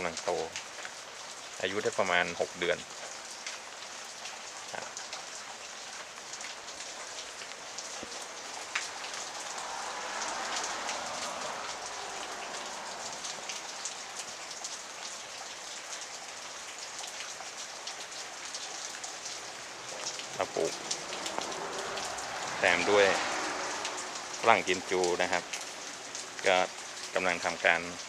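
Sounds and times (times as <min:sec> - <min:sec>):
steady rain falling: 0:00.0 - 0:28.0.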